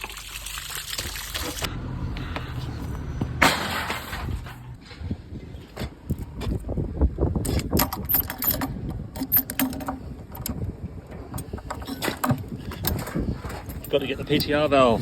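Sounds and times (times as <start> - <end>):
low rumbling handling noise: 1.6 - 15.0
metal tools clinking: 7.4 - 10.6, 11.3 - 15.0.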